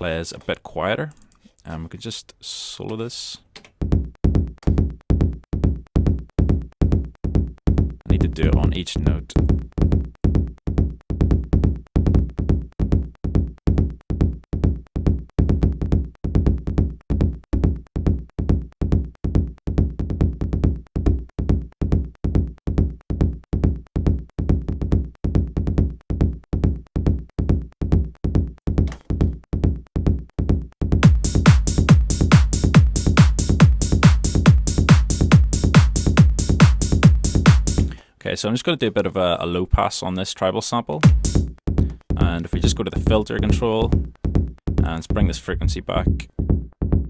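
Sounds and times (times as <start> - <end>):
techno drum loop: 3.8 - 38.0, 41.0 - 47.0
hi-hat percussion: 31.0 - 37.9, 41.0 - 41.5.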